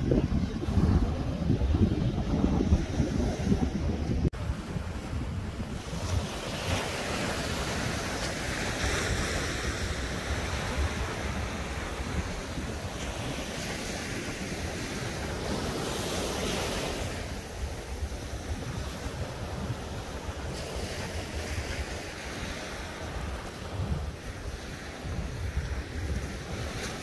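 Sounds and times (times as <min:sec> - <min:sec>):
surf washing over rocks: 0:00.0 - 0:27.0
wind buffeting microphone: 0:00.0 - 0:27.0.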